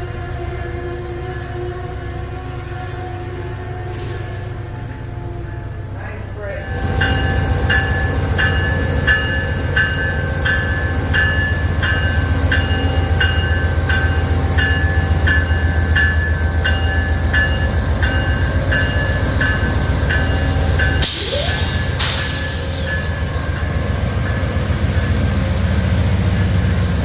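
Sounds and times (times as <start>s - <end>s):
train rumbling past: 0.0s - 27.0s
grade crossing bell: 6.5s - 27.0s.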